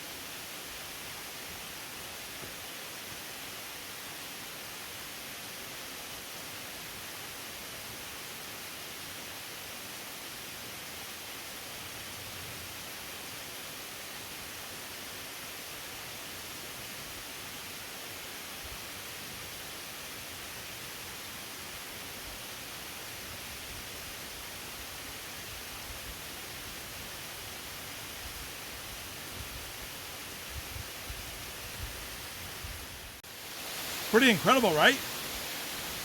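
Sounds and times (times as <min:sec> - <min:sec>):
waterfall rushing: 0:33.3 - 0:36.0.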